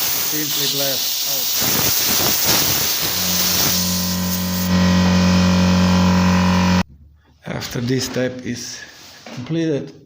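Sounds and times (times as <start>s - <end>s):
hissing air spray: 0.0s - 4.8s
loud steady hum: 3.0s - 6.8s.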